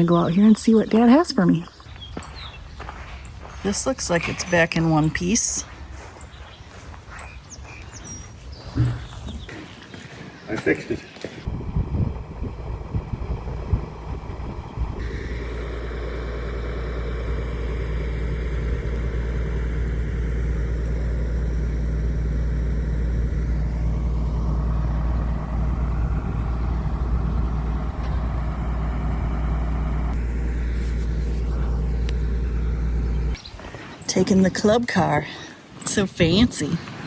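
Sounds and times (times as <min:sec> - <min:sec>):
utility vehicle motor drone: 0:11.4 - 0:33.5.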